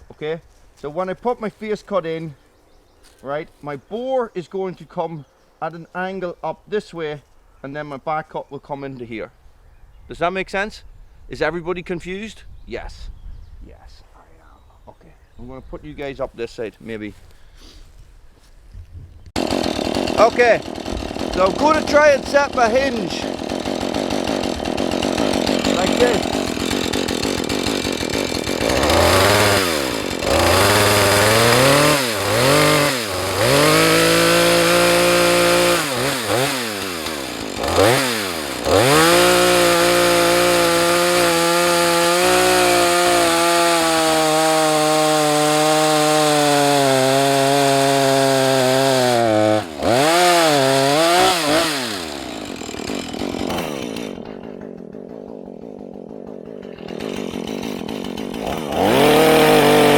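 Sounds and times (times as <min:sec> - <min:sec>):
chainsaw cutting wood: 0:19.4 - 0:59.9.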